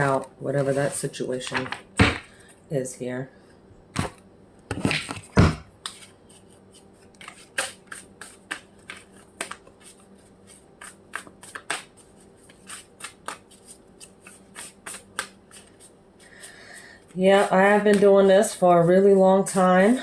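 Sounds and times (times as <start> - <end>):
cards being shuffled: 5.8 - 15.9.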